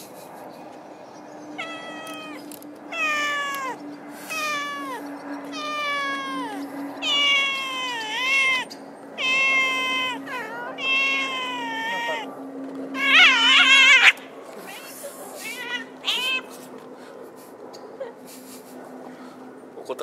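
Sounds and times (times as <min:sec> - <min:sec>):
cat meowing: 0:01.6 - 0:12.3, 0:13.0 - 0:16.6.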